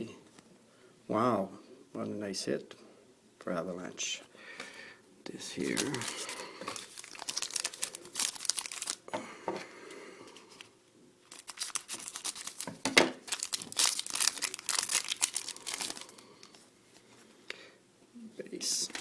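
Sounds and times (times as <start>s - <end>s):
foil wrapper crinkling and tearing: 5.4s - 9.1s, 11.2s - 16.6s.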